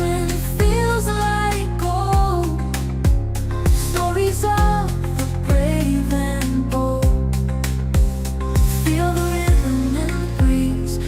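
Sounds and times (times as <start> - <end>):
music with bass and melody: 0.0 - 11.0
deep pitch-dropping kick drum: 0.5 - 1.0, 2.2 - 5.9, 7.0 - 9.8, 10.4 - 10.7.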